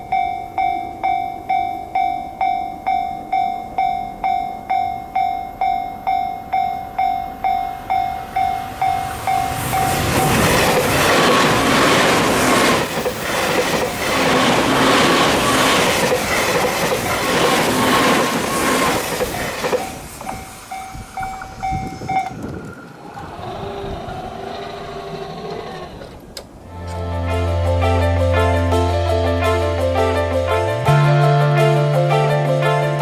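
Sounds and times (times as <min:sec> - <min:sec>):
level-crossing warning bell: 0:00.0 - 0:22.9
train passing: 0:00.0 - 0:33.0
wheels clattering over rail joints: 0:08.3 - 0:26.7.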